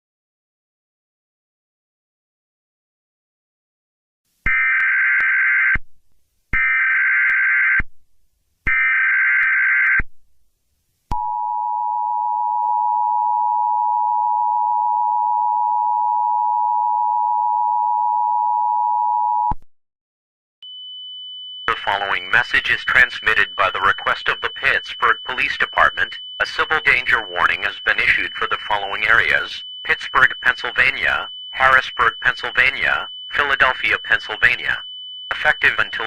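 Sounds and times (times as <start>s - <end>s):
data header bursts: 21.7s - 36.0s
two-tone attention signal: 21.7s - 36.0s.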